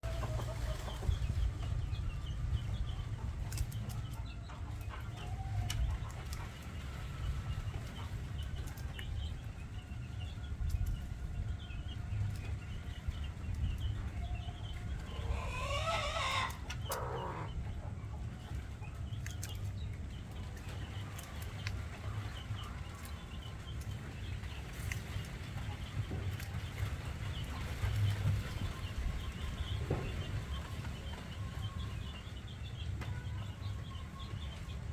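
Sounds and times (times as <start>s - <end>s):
chickens clucking: 0.0s - 34.9s
chicken drawn-out call: 14.9s - 17.6s.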